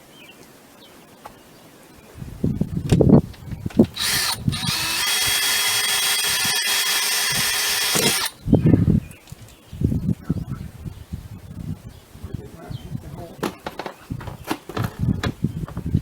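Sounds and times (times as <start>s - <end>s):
power drill running: 3.9s - 8.4s.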